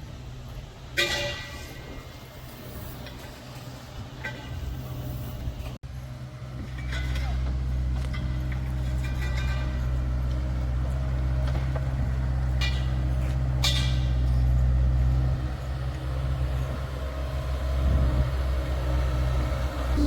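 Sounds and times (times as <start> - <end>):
diesel engine running: 4.6 - 20.0.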